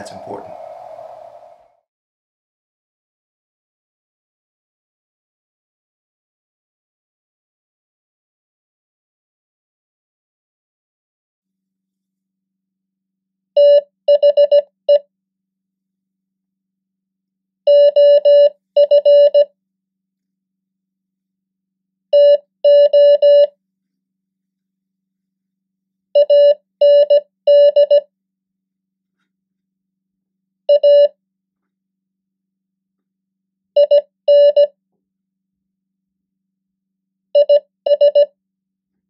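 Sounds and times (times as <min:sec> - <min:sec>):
morse code beeps: 0:17.7 - 0:19.4, 0:22.2 - 0:23.5, 0:26.2 - 0:28.0, 0:30.7 - 0:31.1, 0:33.8 - 0:34.7, 0:37.4 - 0:38.3.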